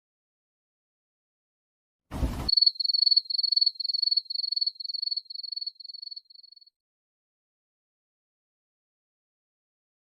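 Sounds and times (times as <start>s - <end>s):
cricket chirping: 2.5s - 6.7s.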